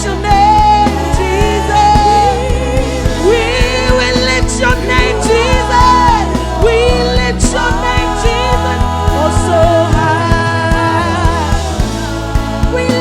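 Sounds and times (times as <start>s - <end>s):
gospel band with singing: 0.0s - 13.0s.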